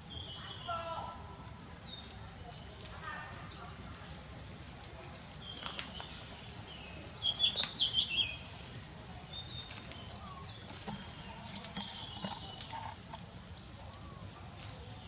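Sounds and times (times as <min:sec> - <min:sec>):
birds chirping: 0:05.0 - 0:15.0.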